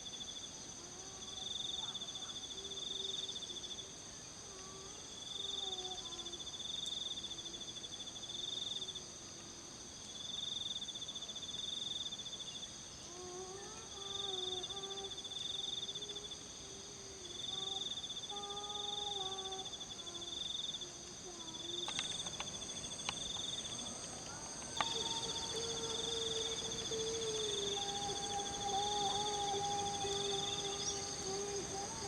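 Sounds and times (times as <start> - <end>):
cricket trill: 0.0 - 32.0
high insect drone: 0.0 - 32.0
faint wavering pitched sound: 21.8 - 32.0.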